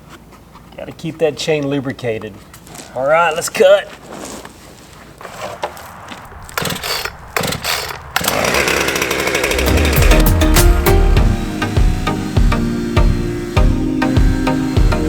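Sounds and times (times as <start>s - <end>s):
chainsaw revving: 5.2s - 15.0s
chainsaw clicks: 5.6s - 11.0s.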